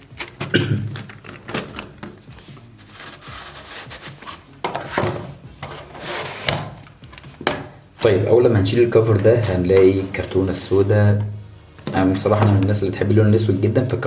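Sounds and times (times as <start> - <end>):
cardboard rubbing and sliding: 2.2 - 6.8.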